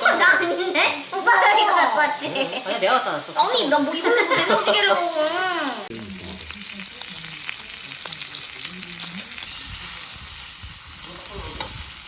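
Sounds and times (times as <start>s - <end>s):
food sizzling in a hot pan: 0.0s - 12.0s.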